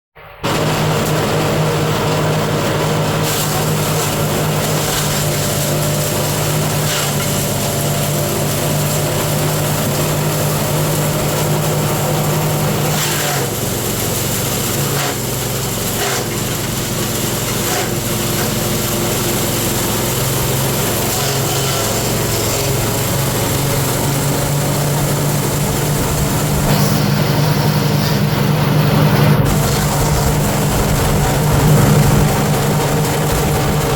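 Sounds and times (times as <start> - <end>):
small engine humming and rattling: 0.4 - 33.9.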